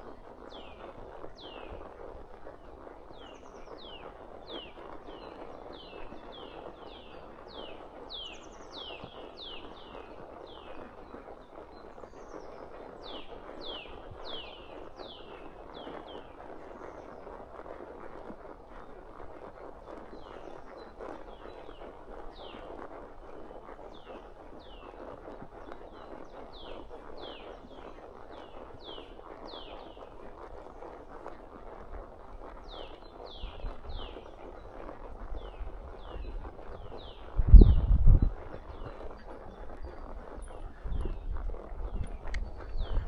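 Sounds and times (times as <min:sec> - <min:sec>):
horse hooves walking on trail: 0:00.0 - 0:43.0
songbird calling: 0:01.4 - 0:01.8, 0:03.2 - 0:04.0, 0:04.6 - 0:10.8, 0:12.1 - 0:17.0, 0:26.5 - 0:27.7, 0:28.4 - 0:30.1, 0:32.7 - 0:34.6, 0:35.4 - 0:43.0.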